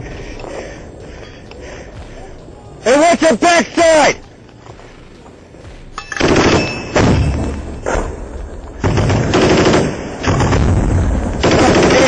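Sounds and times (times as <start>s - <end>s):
automatic gunfire bursts: 6.2s - 7.3s, 8.8s - 12.0s.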